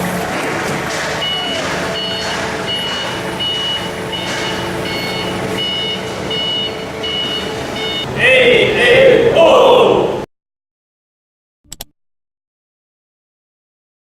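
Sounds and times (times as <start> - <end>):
workshop machinery noise: 0.0 - 10.3
electronic warning beeps: 1.2 - 8.1.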